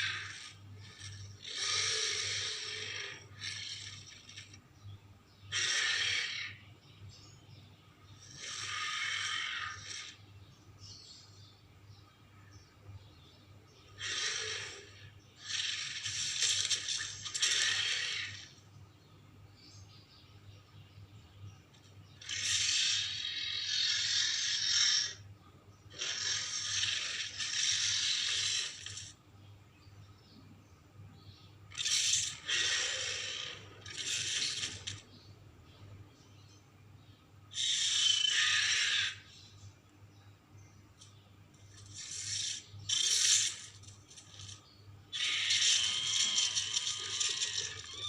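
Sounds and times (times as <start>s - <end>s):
creature rasping hiss calls: 0.0s - 4.3s, 5.5s - 6.6s, 8.3s - 10.2s, 14.0s - 18.5s, 22.2s - 25.2s, 25.9s - 29.1s, 31.8s - 34.6s, 37.6s - 39.3s, 45.2s - 48.0s
harsh breathy creature hisses: 0.0s - 4.4s, 8.2s - 10.2s, 14.0s - 16.7s.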